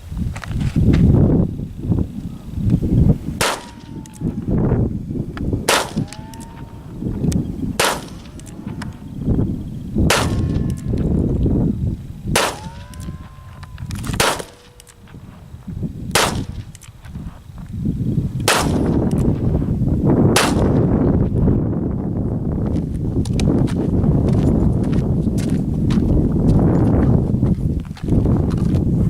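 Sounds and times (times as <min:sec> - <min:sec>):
revolver shots: 0:03.4 - 0:04.4, 0:05.6 - 0:08.6, 0:10.0 - 0:10.9, 0:12.3 - 0:13.2, 0:13.8 - 0:15.1.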